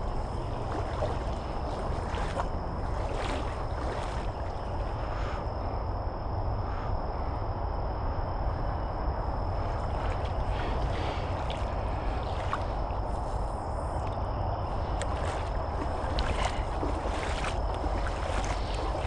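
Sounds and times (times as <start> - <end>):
water sloshing around wading legs: 0.0 - 5.5, 9.3 - 19.0
wind rumble on microphone: 0.0 - 19.0.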